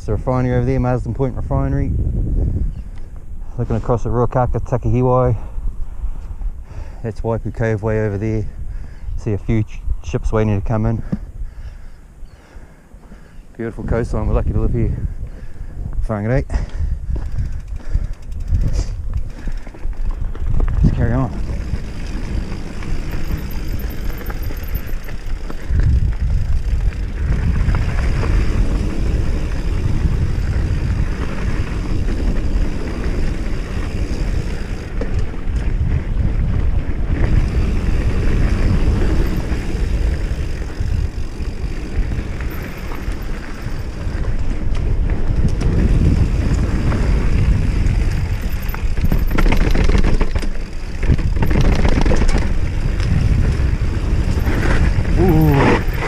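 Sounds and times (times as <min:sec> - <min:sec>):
mountain bike rumble and rattle: 0:00.0 - 0:56.0
wind buffeting microphone: 0:00.0 - 0:56.0.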